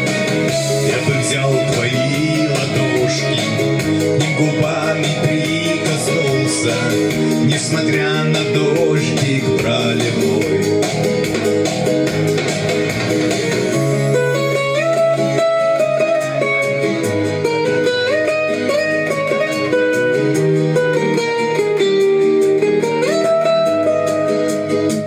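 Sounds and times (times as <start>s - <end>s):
bass line: 0.0s - 25.0s
plucked accompaniment: 0.0s - 25.0s
sliding guitar melody: 0.0s - 25.0s.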